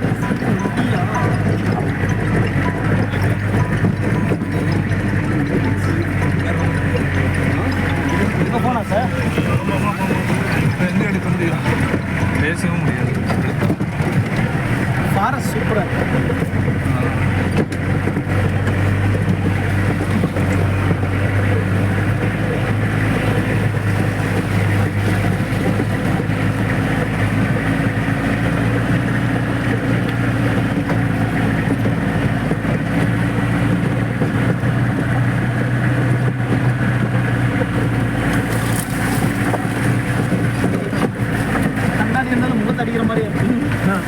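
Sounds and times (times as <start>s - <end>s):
jeep engine running: 0.0s - 44.0s.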